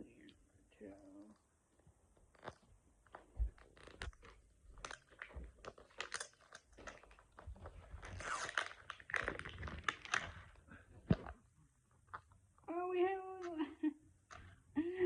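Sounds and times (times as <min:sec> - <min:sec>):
plastic packaging crinkling and tearing: 0:03.6 - 0:11.3.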